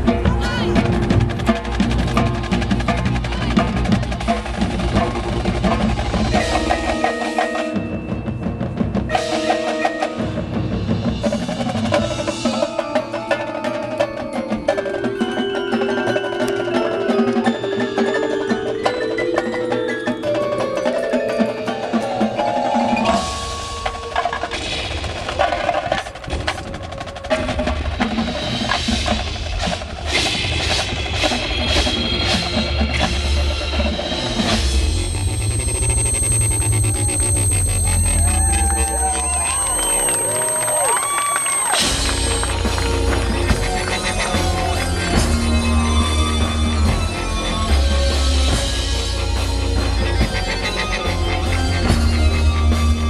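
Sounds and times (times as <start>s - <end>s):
marching band playing: 0.0s - 29.9s, 30.7s - 53.0s
percussion: 0.0s - 53.0s
stepped pitched notes: 33.7s - 53.0s.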